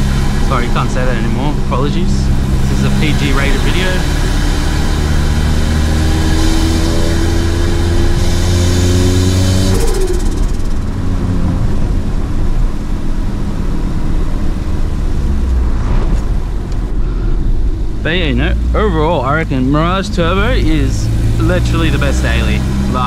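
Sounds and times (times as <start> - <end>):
car engine revving: 0.0 - 23.0
turbo whoosh and flutter: 15.3 - 17.0.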